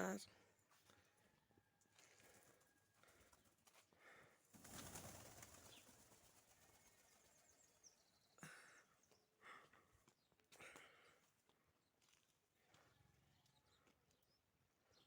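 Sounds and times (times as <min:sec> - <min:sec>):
pigeon wings flapping: 0:04.5 - 0:06.8.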